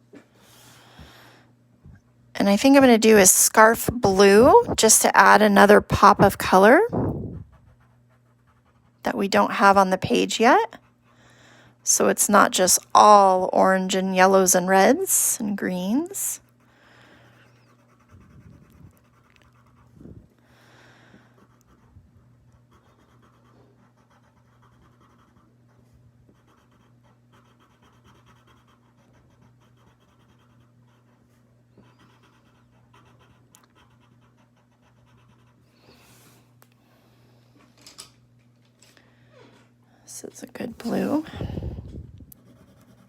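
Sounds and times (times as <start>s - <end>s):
low electrical hum: 0.0s - 43.0s
pencil scratching on paper: 17.3s - 20.0s, 22.6s - 35.6s, 42.4s - 43.0s.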